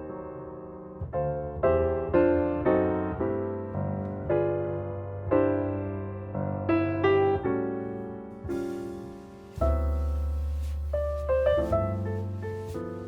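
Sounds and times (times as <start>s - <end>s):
slow piano chords: 0.0s - 13.0s.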